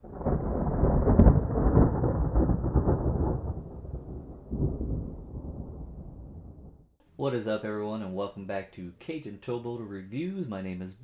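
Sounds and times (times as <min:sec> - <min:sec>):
rolling thunder rumbling: 0:00.0 - 0:07.0.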